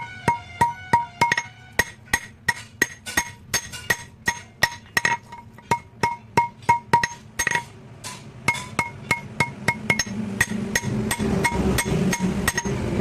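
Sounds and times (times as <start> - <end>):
hammer ringing on anvil: 0.0 - 12.9.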